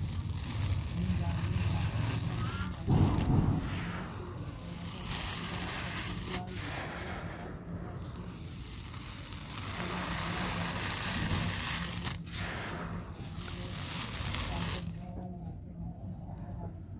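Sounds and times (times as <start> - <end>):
cement crumbling and crackling: 0.0 - 6.6, 8.2 - 12.4, 13.2 - 15.5.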